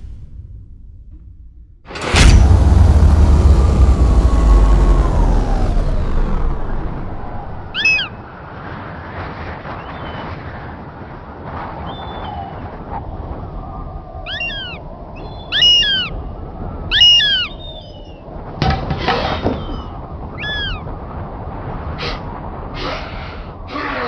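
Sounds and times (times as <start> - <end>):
high-pitched animal calls: 15.5 - 16.1, 16.9 - 17.6, 19.6 - 20.8.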